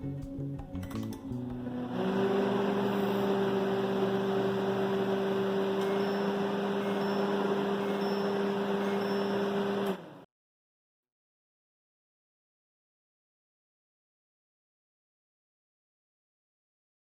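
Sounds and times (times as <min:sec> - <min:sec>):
microwave oven humming: 0:01.5 - 0:10.3.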